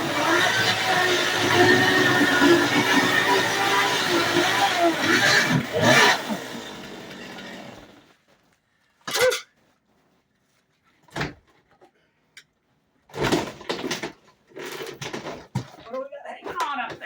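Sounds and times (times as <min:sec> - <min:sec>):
chainsaw engine running: 0:00.0 - 0:08.0.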